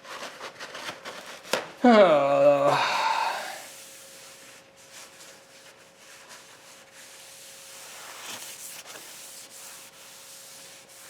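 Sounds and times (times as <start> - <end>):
thin steady hum: 1.8 - 4.5.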